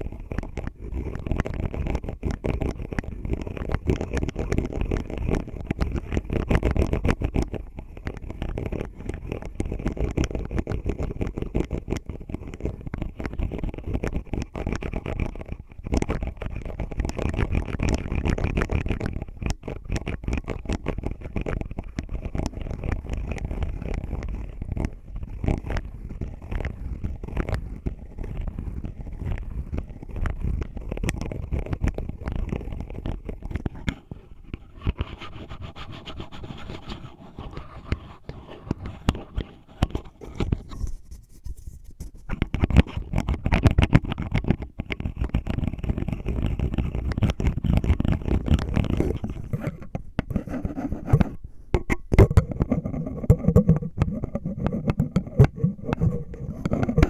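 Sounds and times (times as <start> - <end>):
scratching on plastic lid: 0.0 - 57.0.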